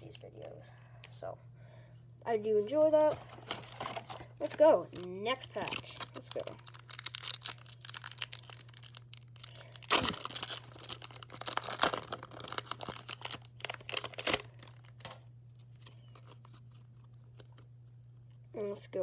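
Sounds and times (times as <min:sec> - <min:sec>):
wrapper tearing and crinkling: 0:03.4 - 0:17.7.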